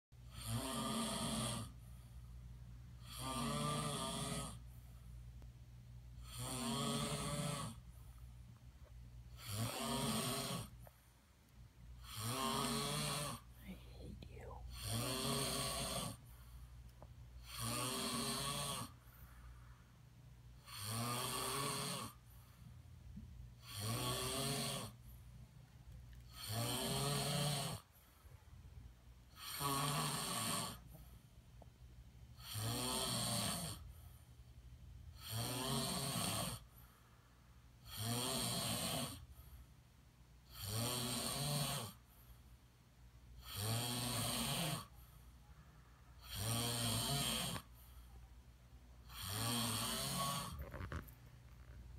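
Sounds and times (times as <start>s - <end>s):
person snoring: 0.3s - 1.8s, 3.0s - 4.6s, 6.2s - 7.8s, 9.4s - 10.8s, 12.0s - 16.2s, 17.4s - 19.0s, 20.6s - 22.2s, 23.6s - 25.0s, 26.3s - 27.9s, 29.3s - 30.9s, 32.4s - 33.9s, 35.2s - 36.7s, 37.8s - 39.3s, 40.5s - 42.0s, 43.4s - 45.0s, 46.2s - 47.8s, 49.0s - 51.7s.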